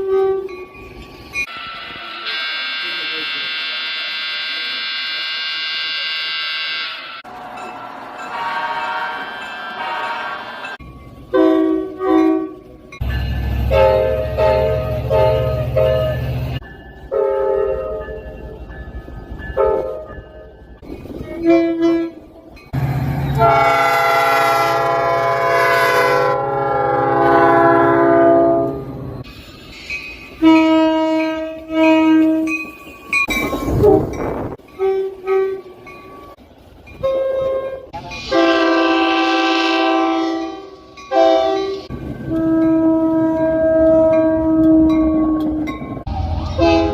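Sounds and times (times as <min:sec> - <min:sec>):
train horn blasts: 0:01.5 - 0:07.3, 0:08.2 - 0:12.7, 0:13.6 - 0:16.2, 0:17.1 - 0:18.1, 0:21.3 - 0:22.3, 0:23.3 - 0:29.2, 0:30.4 - 0:32.6, 0:37.0 - 0:46.9.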